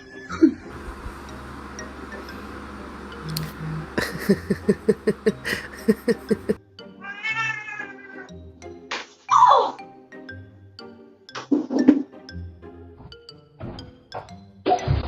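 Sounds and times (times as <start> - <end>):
cat meowing: 7.0 - 8.3.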